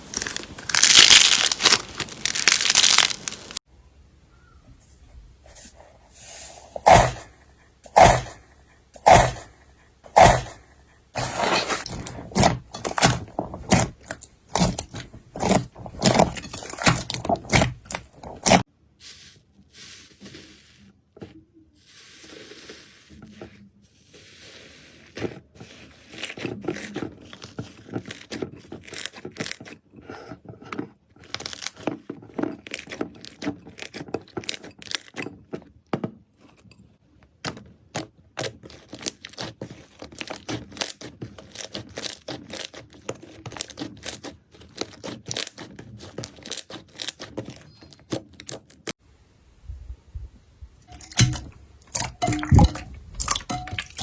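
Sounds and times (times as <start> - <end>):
slime crackling and popping: 0.0 - 3.6.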